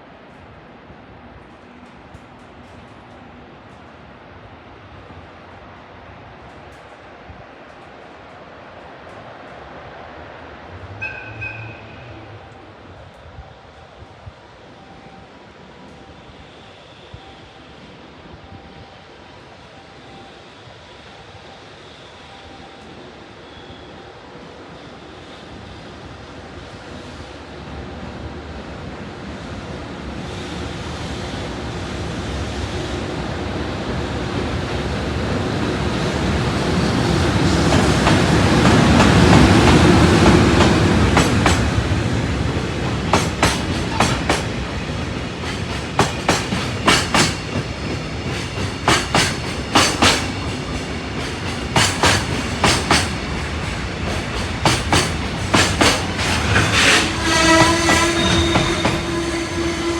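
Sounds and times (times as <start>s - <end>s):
train rumbling past: 0.0s - 59.9s
wheels clacking over rail joints: 36.9s - 59.9s.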